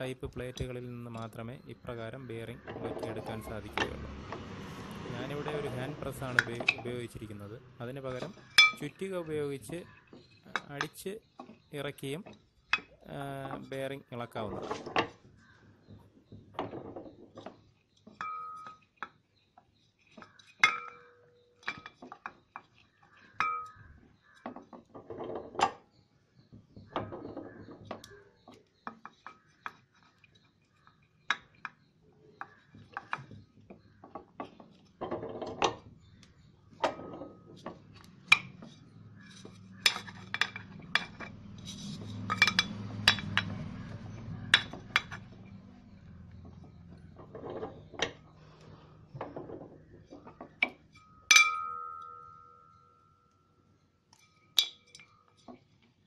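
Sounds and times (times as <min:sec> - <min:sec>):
small metal parts clinking: 0:36.8 - 0:45.6.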